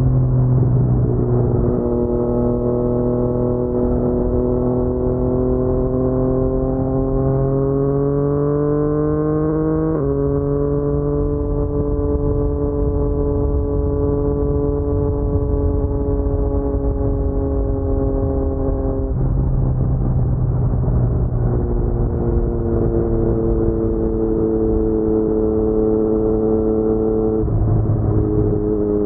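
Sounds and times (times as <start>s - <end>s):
motorcycle engine accelerating: 0.0s - 29.0s.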